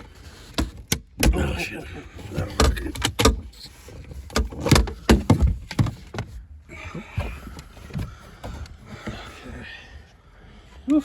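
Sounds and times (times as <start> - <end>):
rustling and handling: 2.2 - 9.6
plastic trim knocks and clunks: 2.3 - 6.4, 7.2 - 9.3.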